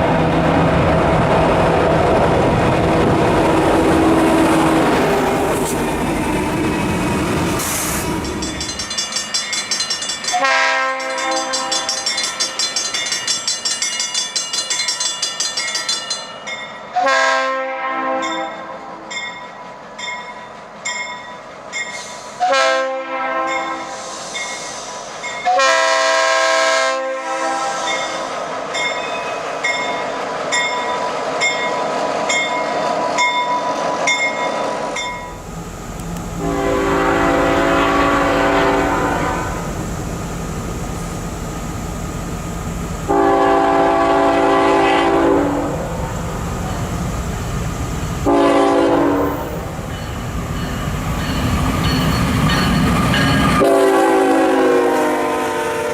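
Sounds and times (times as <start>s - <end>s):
passing train rumbling: 0.0s - 55.9s
locomotive air horn blasts: 10.4s - 12.0s, 17.0s - 19.0s, 22.4s - 24.0s, 25.5s - 28.0s, 36.4s - 39.7s, 43.1s - 45.8s, 48.2s - 49.6s, 53.6s - 55.9s.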